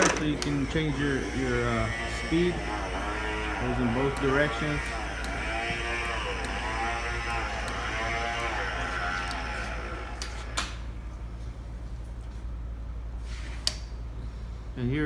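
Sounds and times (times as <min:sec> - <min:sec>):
power feed motor whining: 0:00.0 - 0:10.9
steady low hum: 0:00.0 - 0:15.0.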